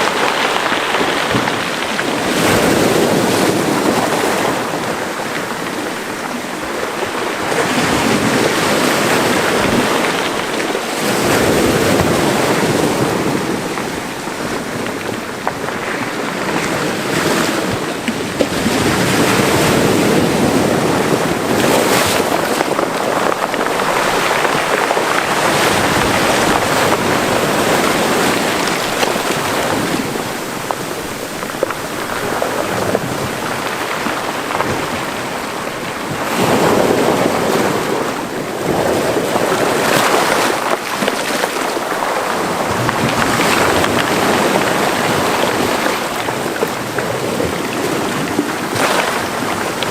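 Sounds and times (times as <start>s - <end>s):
sea waves washing into cove: 0.0s - 49.9s.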